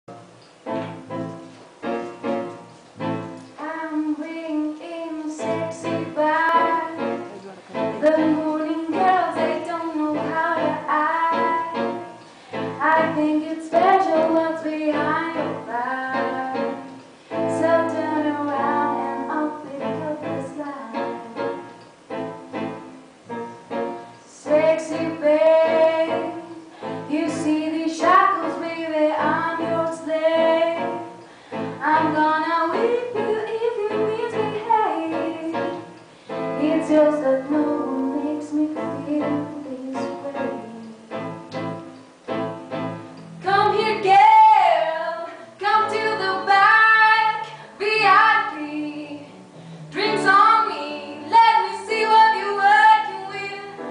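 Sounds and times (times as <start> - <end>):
woman singing: 3.6 - 21.7, 24.3 - 31.2, 31.8 - 41.3, 43.4 - 53.9.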